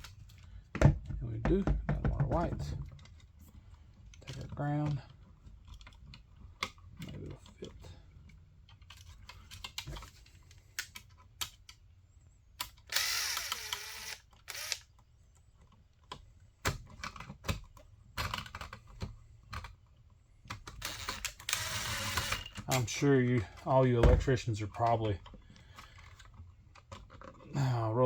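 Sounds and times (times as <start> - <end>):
clicks and taps of handling wires: 0.0 - 11.8, 22.6 - 27.5.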